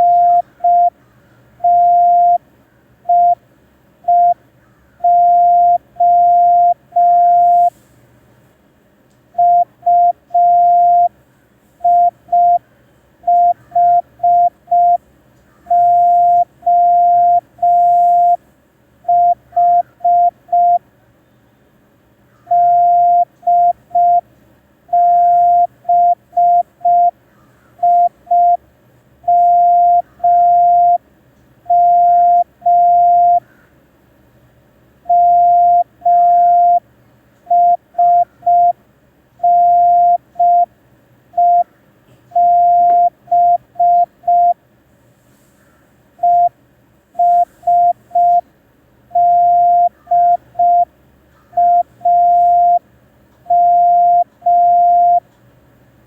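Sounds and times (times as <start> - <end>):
morse code beeps: 0.0 - 1.0, 1.6 - 2.4, 3.1 - 3.4, 4.0 - 4.4, 5.0 - 7.8, 9.4 - 11.1, 11.8 - 12.6, 13.2 - 15.0, 15.7 - 18.4, 19.1 - 20.8, 22.5 - 24.2, 24.9 - 27.2, 27.8 - 28.6, 29.3 - 31.0, 31.7 - 33.4, 35.1 - 36.8, 37.5 - 38.8, 39.4 - 40.7, 41.4 - 41.7, 42.3 - 44.6, 46.2 - 46.5, 47.2 - 48.4, 49.1 - 50.9, 51.6 - 52.8, 53.5 - 55.2.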